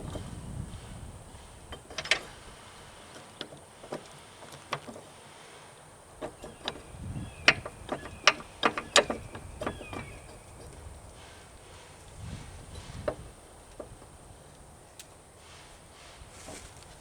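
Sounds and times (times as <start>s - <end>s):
metal tools clicking and clinking: 1.7s - 5.0s.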